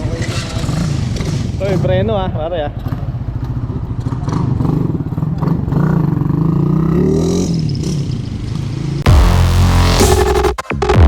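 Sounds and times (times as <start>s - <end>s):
motorcycle engine revving: 0.0s - 11.0s
electronic music: 9.0s - 11.0s.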